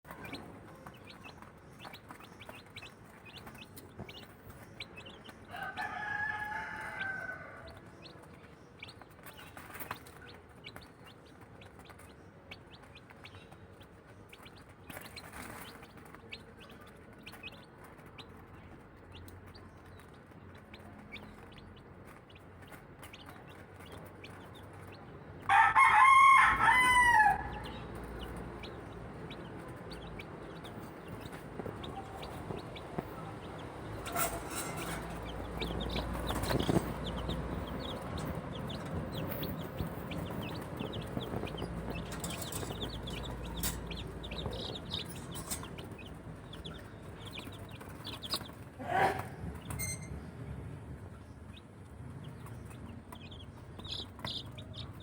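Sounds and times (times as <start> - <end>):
chicks peeping: 0.0 - 55.0
rooster crowing: 5.5 - 7.8, 25.5 - 27.8.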